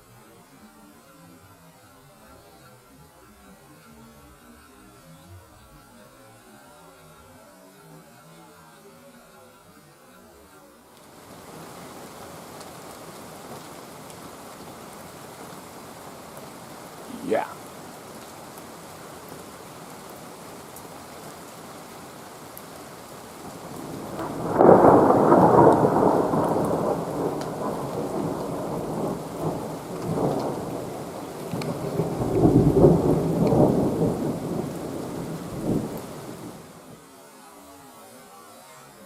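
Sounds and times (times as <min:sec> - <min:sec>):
steady rain: 0:00.0 - 0:39.0
thunder rolling: 0:23.6 - 0:36.7.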